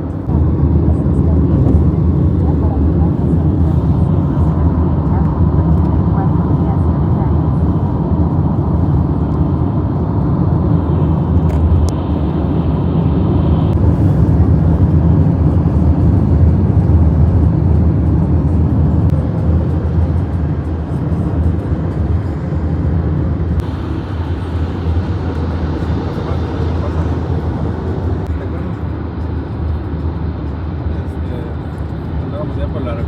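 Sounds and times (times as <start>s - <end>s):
car cabin rumble: 0.0s - 25.8s.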